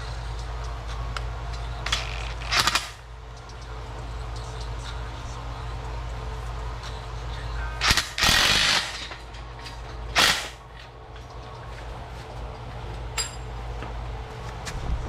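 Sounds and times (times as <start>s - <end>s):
power driver running bolts: 1.2s - 3.1s, 7.8s - 10.9s.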